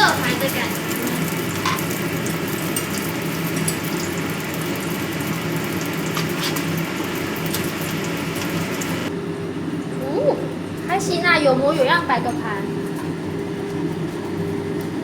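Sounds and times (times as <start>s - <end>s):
steak sizzling in a frying pan: 0.0s - 9.1s.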